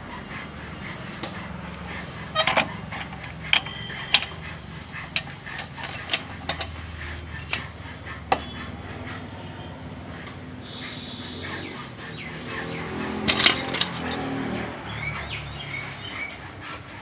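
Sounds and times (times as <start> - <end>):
sharp metallic clicks and knocks: 1.2 - 8.7, 12.0 - 14.6.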